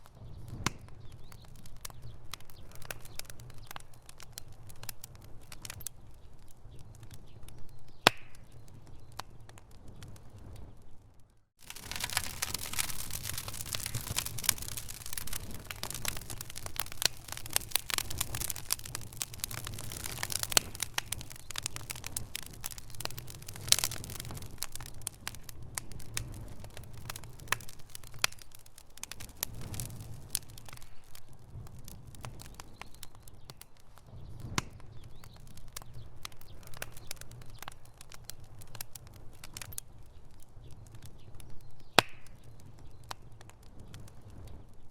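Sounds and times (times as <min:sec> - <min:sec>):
fire crackling and popping: 0:00.0 - 0:44.9
loud crack: 0:11.6 - 0:31.2.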